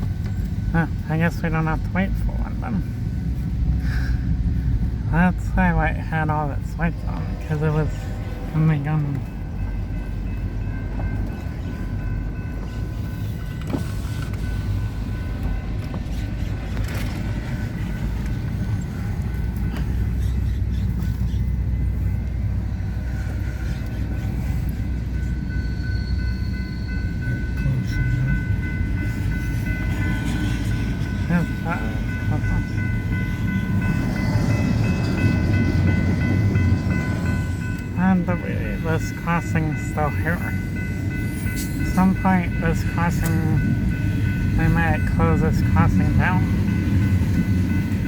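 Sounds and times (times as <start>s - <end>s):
freight train cars rumbling: 0.0s - 48.0s.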